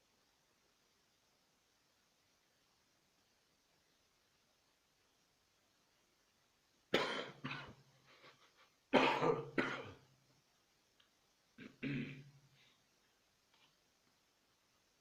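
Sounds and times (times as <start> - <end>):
person coughing: 7.0 - 7.8, 8.9 - 10.0, 11.6 - 12.3.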